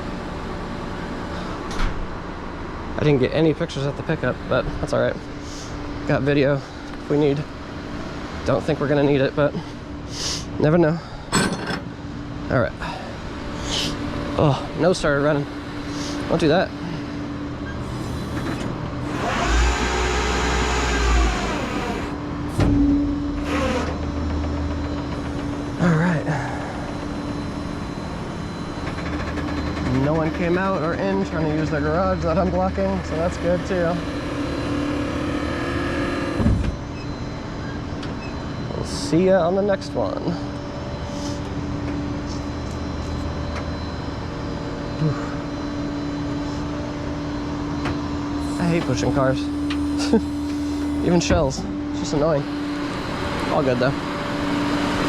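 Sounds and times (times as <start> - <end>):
steady low hum: 0.0 - 55.0
truck engine droning: 0.0 - 55.0.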